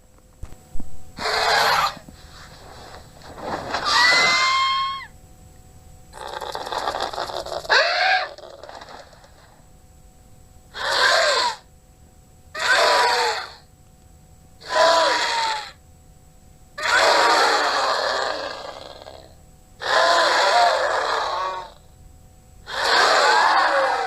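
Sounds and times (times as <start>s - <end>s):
raspy creature screeches: 1.2s - 2.0s, 3.8s - 5.1s, 6.2s - 9.1s, 10.8s - 11.6s, 12.6s - 13.6s, 14.6s - 15.8s, 16.8s - 19.0s, 19.8s - 21.8s, 22.7s - 24.0s.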